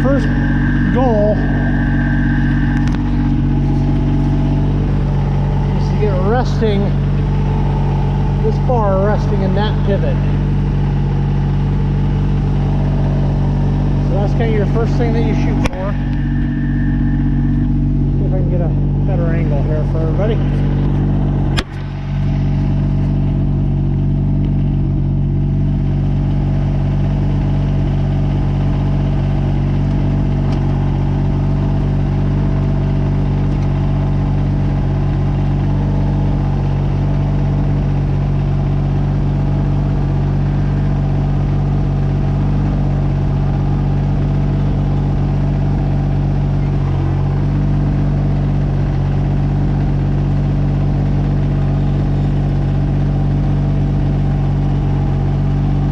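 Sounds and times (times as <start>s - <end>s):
tractor diesel engine running: 0.0s - 55.9s.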